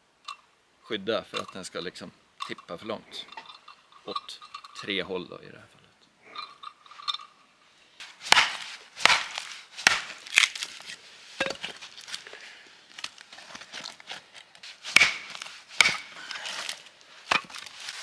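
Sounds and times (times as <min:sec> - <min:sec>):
footsteps crunching in snow: 0:08.0 - 0:12.3, 0:12.9 - 0:18.0.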